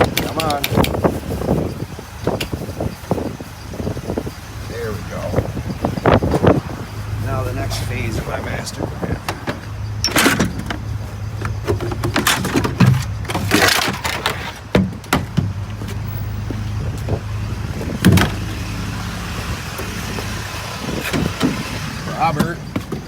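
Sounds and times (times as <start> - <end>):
vehicle engine idling: 0.0 - 23.0
knocks and clunks: 8.5 - 23.0.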